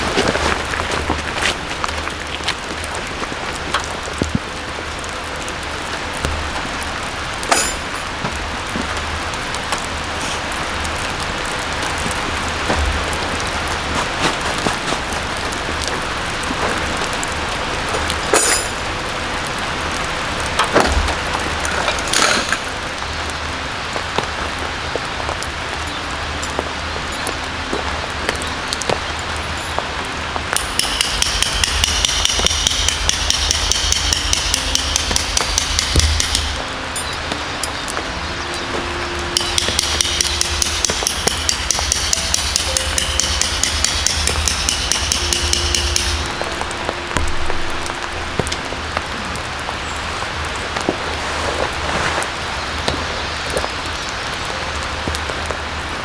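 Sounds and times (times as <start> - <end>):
rain falling: 0.0 - 56.0
ringing metal hammering: 6.2 - 8.5, 18.1 - 19.0, 30.4 - 49.5
scattered knocks: 29.8 - 38.1, 38.8 - 49.4.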